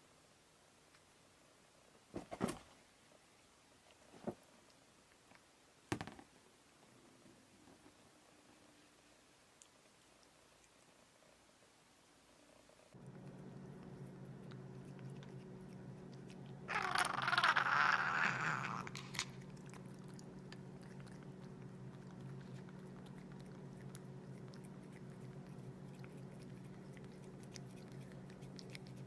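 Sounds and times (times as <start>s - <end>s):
steady low hum: 6.6s - 29.0s
pet chewing with crunching clicks: 12.9s - 16.7s, 18.9s - 29.0s.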